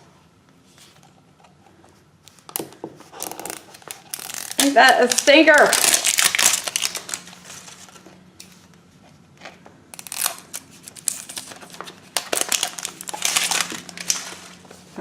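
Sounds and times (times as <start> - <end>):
plastic packaging crinkling: 2.4 - 8.1, 10.0 - 15.0.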